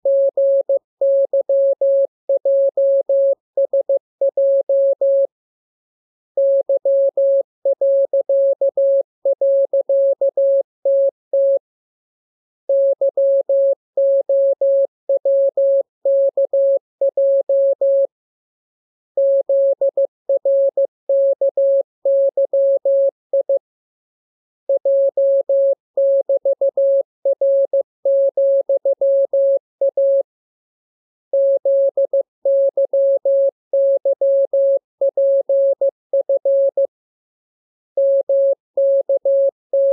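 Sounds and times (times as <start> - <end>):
morse code tone: 38.0 - 39.9.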